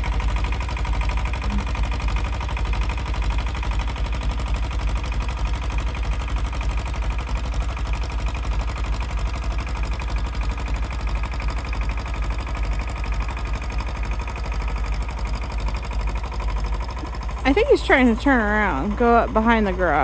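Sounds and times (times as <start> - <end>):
tractor engine running: 0.0 - 20.0.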